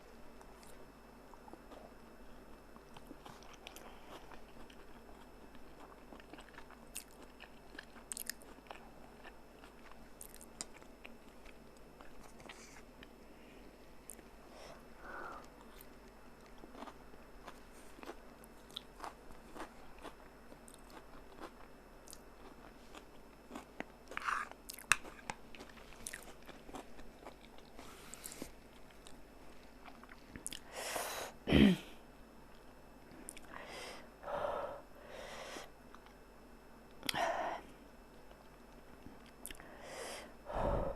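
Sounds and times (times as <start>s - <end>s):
person chewing noodles: 2.7s - 13.2s, 14.1s - 30.7s, 39.2s - 39.7s.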